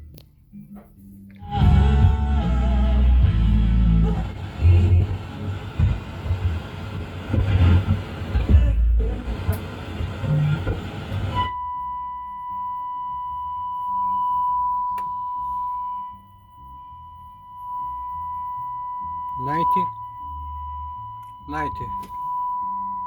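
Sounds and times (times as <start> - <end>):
loud music: 1.4 - 6.2
sine test tone: 10.2 - 23.0.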